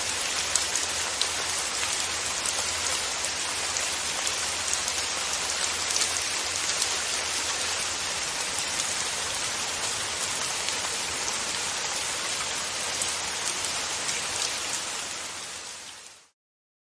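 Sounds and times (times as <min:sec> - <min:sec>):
steady rain falling: 0:00.0 - 0:16.4.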